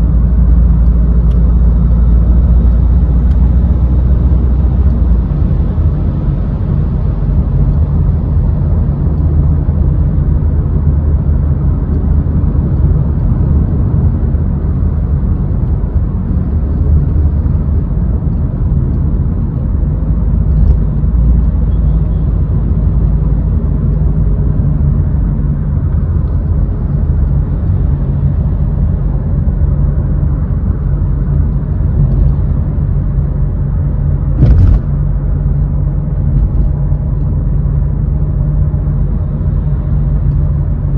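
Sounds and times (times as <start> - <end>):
car engine and road noise: 0.0 - 40.9
short knock: 34.4 - 34.9.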